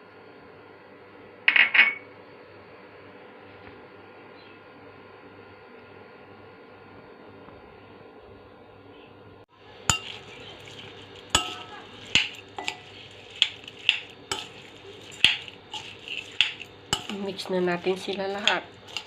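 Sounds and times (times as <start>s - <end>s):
spoon clinking against mixing bowl: 9.8s - 19.0s.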